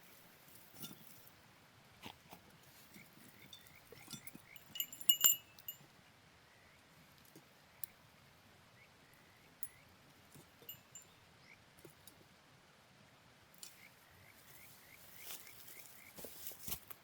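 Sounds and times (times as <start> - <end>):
small metal objects clinking: 3.4 - 5.8.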